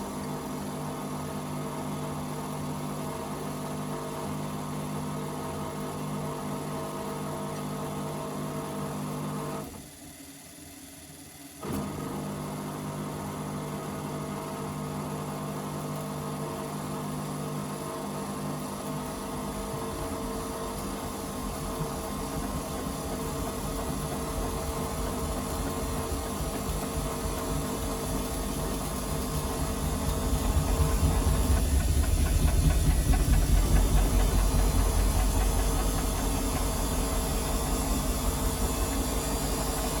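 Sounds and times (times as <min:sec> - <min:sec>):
washing machine motor humming: 0:11.7 - 0:40.0
motor crackling rattle: 0:19.1 - 0:40.0.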